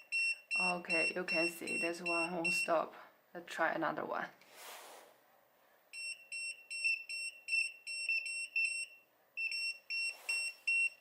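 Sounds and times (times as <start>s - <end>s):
rapid high-pitched pager beeps: 6.0s - 11.0s.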